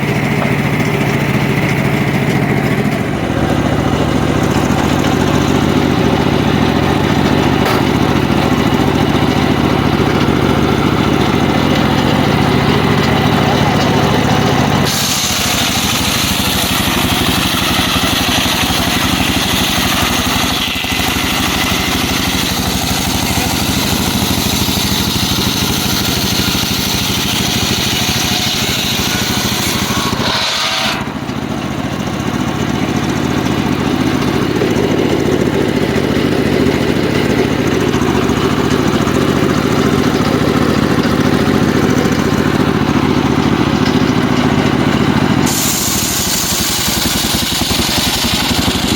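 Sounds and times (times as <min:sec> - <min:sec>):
sawmill engine running: 0:00.0 - 0:48.9
saw blade hissing through log: 0:14.8 - 0:21.7, 0:26.0 - 0:31.1, 0:45.4 - 0:48.9.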